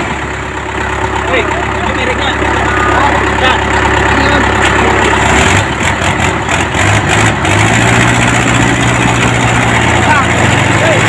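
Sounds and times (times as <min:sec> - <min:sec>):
truck diesel engine idling: 0:00.0 - 0:11.0.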